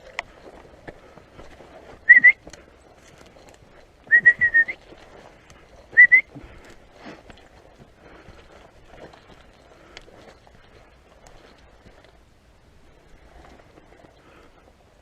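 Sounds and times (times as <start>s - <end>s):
faint footsteps on ground: 0.0s - 15.0s
short whistle blasts: 2.1s - 2.4s, 4.1s - 4.8s, 6.0s - 6.3s.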